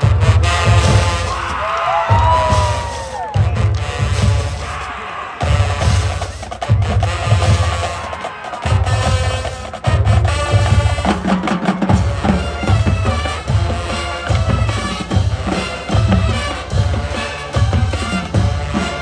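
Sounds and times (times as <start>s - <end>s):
pounding bass drums: 0.0s - 11.2s
marching band playing: 0.0s - 19.0s.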